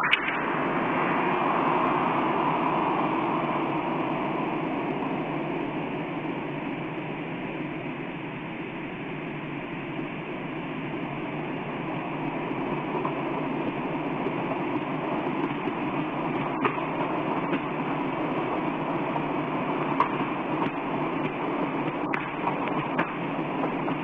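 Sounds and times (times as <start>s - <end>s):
steady rushing roar: 0.0s - 7.4s.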